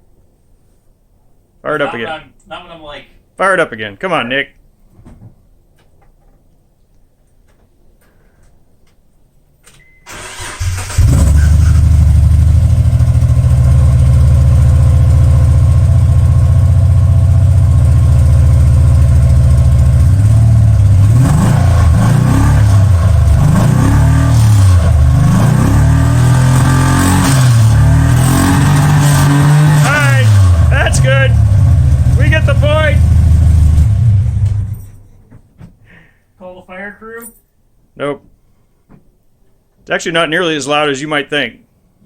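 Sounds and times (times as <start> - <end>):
car engine starting and revving: 10.1 - 35.0.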